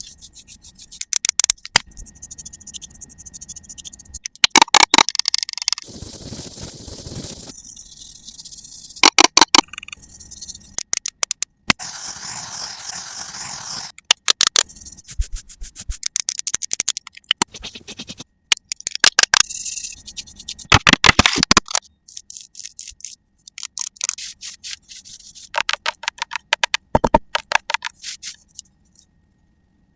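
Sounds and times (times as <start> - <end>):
rapid tapping and clicking: 24.8 - 28.6
scraping and brushing: 27.8 - 28.6.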